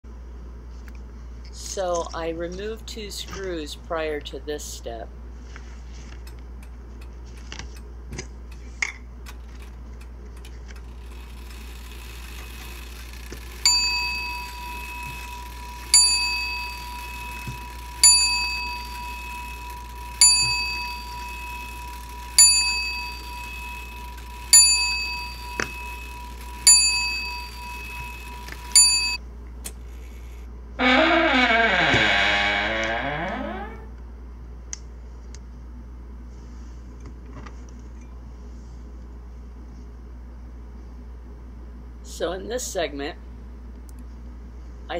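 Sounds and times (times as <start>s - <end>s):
steady high-pitched tone: 11.2s - 29.2s
small bell ringing: 13.0s - 29.2s.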